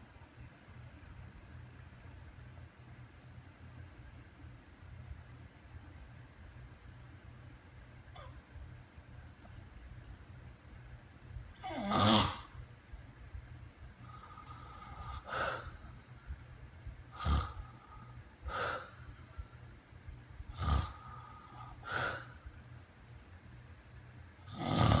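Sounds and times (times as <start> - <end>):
person snoring: 11.6 - 12.6, 14.1 - 16.0, 17.1 - 19.4, 20.5 - 22.4, 24.5 - 25.0.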